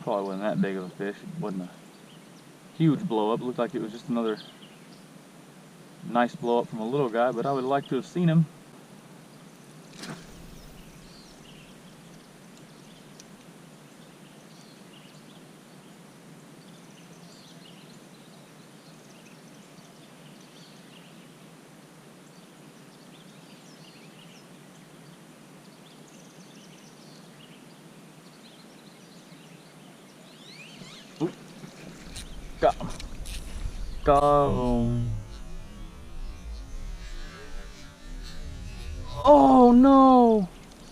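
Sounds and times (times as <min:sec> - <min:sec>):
steady low hiss: 0:00.0 - 0:40.9
bird chirps: 0:30.3 - 0:40.9.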